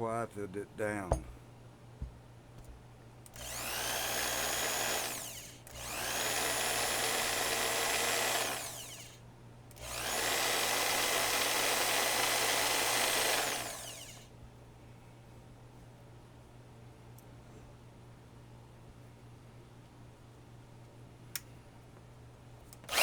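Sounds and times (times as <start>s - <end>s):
band saw motor whine: 3.4s - 9.2s, 9.8s - 14.3s.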